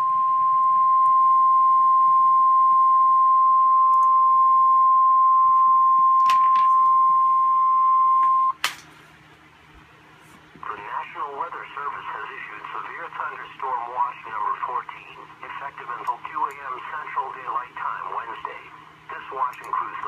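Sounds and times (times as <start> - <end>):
steady alarm tone: 0.0 - 8.5
faint radio hiss: 10.1 - 20.0.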